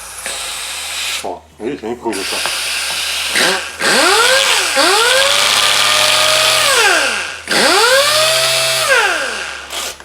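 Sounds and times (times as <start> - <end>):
air hiss: 0.0 - 1.4
pneumatic sander whine: 2.2 - 10.0.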